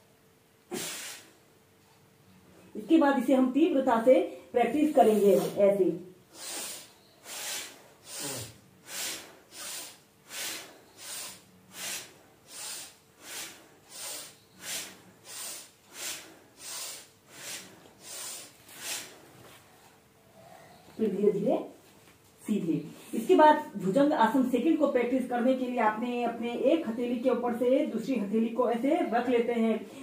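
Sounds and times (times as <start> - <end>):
woman breathing rapidly: 6.3 - 19.3.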